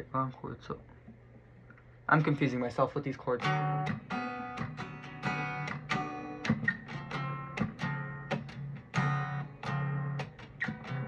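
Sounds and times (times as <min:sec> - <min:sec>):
guitar strumming: 0:02.2 - 0:11.0.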